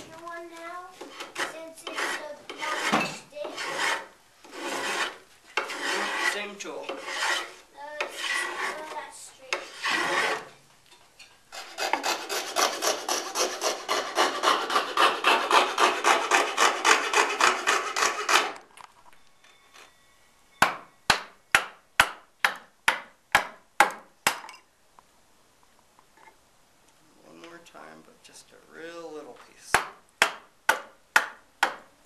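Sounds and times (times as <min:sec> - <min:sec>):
hand tool rasping over wood: 0:01.0 - 0:10.5, 0:11.5 - 0:18.6
sharp knocks on wood: 0:29.8 - 0:31.9.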